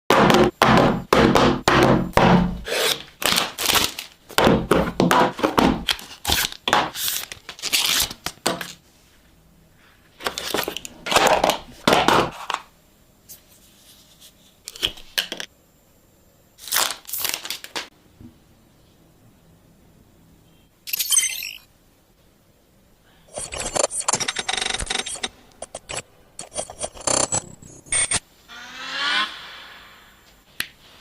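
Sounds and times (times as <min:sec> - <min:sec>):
paper tearing: 0:02.7 - 0:04.1, 0:05.9 - 0:08.8
plastic wrap crinkling: 0:02.8 - 0:04.3, 0:05.8 - 0:08.8, 0:16.6 - 0:17.9.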